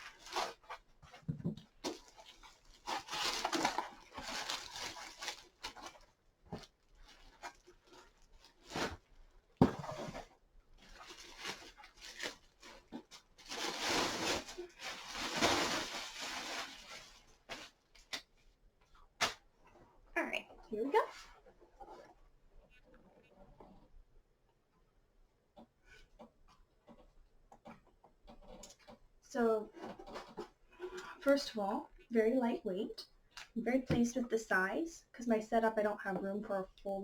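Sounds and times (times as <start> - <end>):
packaging rustling and crinkling: 0.0 - 18.2.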